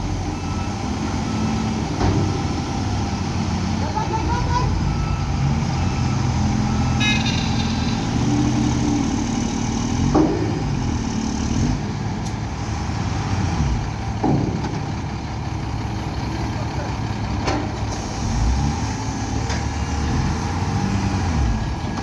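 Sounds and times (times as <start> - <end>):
diesel machinery running: 0.0 - 22.0
high toot: 6.9 - 9.4.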